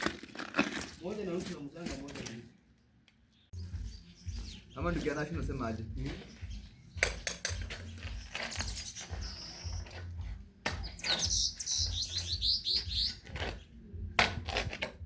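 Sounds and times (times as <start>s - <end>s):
bird chirping: 3.2s - 14.2s
bird whistling: 7.9s - 10.2s, 10.8s - 13.3s.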